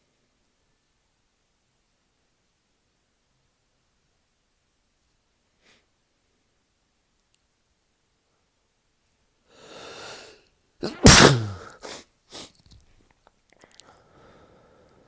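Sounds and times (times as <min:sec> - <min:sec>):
man inhaling before sneeze: 0:09.5 - 0:12.5
man sneezing loudly: 0:10.8 - 0:12.5.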